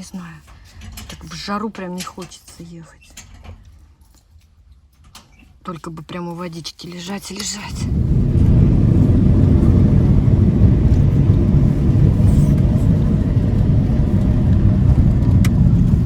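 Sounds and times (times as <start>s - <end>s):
car road and wind noise: 7.4s - 16.0s.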